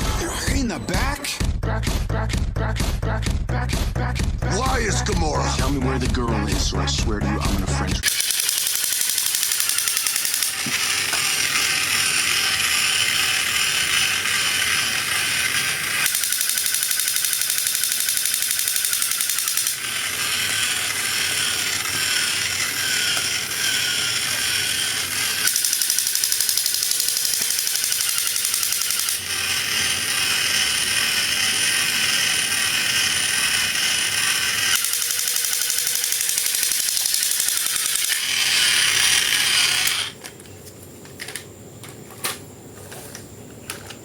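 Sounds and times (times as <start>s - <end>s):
fast mechanical clicking: 8.0s - 40.2s.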